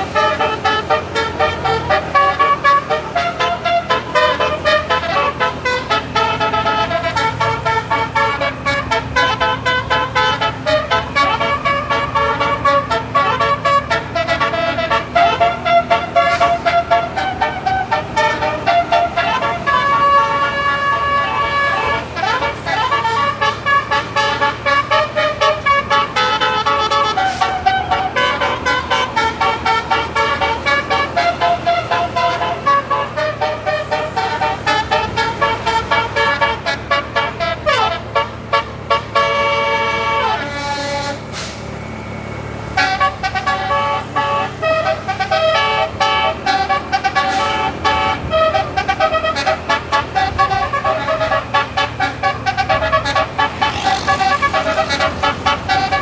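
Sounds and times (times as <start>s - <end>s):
bus engine humming: 0.0s - 56.0s
multi-tone bus horn tooting: 0.0s - 56.0s.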